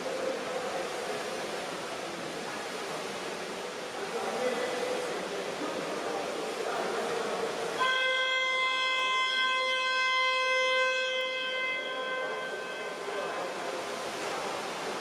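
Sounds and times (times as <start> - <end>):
electronic horn blast: 7.8 - 14.2.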